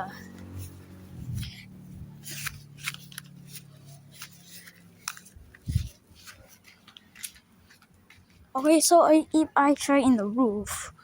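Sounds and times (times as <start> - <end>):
handling clicks and scraping: 0.3 - 8.5.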